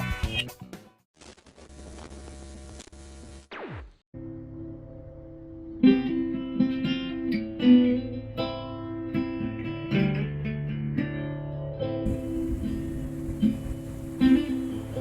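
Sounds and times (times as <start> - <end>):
acoustic guitar picked and strummed: 5.8 - 15.0.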